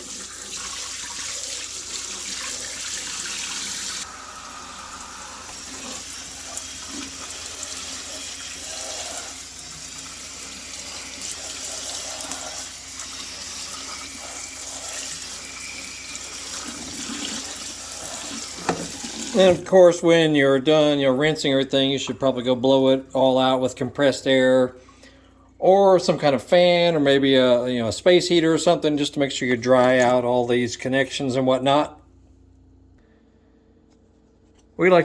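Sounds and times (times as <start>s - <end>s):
tap water running into sink: 0.0s - 19.6s.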